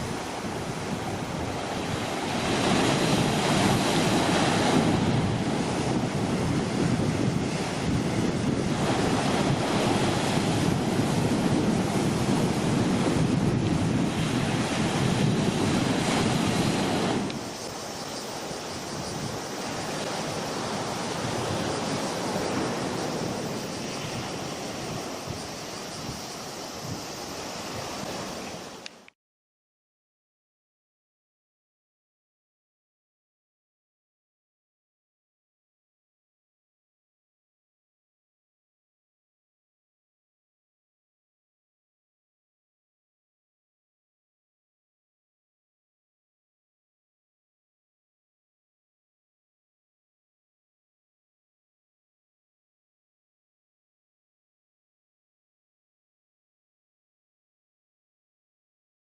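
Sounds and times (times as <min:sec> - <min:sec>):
wind buffeting microphone: 0:00.0 - 0:28.8
waves surging and breaking: 0:00.0 - 0:29.2.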